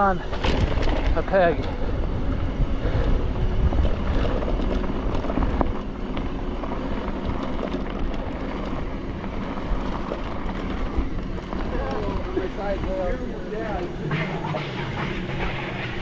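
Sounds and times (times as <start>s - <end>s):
wind rushing over microphone: 0.0s - 6.1s
bike clicks and rattles: 0.0s - 16.0s
bike tyres on dirt: 0.0s - 16.0s.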